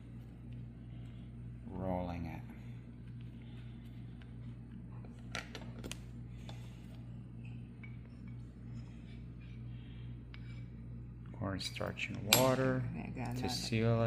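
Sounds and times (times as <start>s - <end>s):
steady low hum: 0.0s - 14.0s
kitchenware clicking and clinking: 12.3s - 12.7s.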